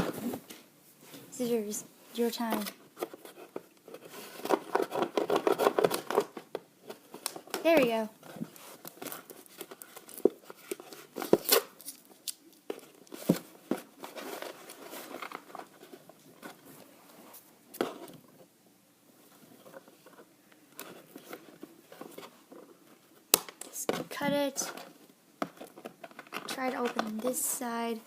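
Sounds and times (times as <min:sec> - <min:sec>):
packaging rustling and scraping: 0:02.4 - 0:18.4.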